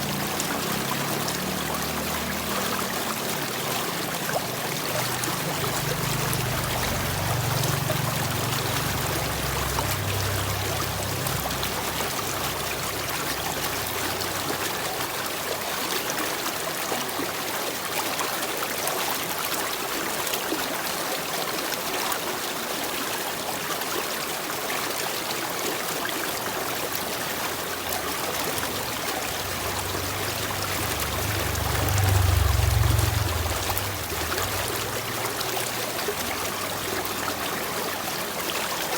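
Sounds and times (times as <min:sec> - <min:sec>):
water trickling: 0:00.0 - 0:38.9
low rumble: 0:28.8 - 0:35.5.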